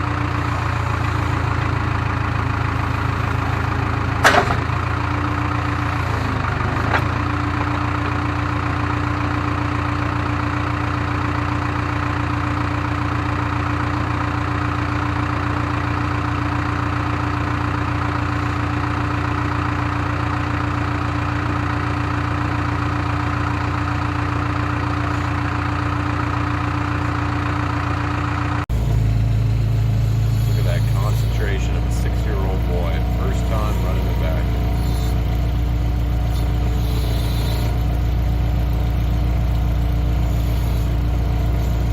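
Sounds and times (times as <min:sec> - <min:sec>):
diesel engine running: 0:00.0 - 0:41.9
steady hum: 0:28.7 - 0:37.9.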